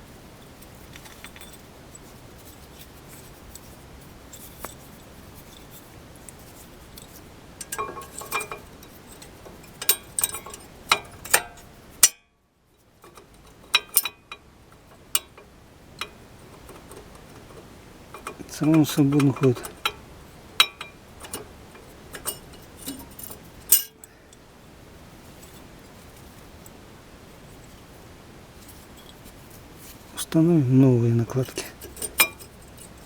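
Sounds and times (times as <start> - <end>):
metal brake pads clinking: 7.6 - 12.2, 13.1 - 24.1, 31.2 - 33.0.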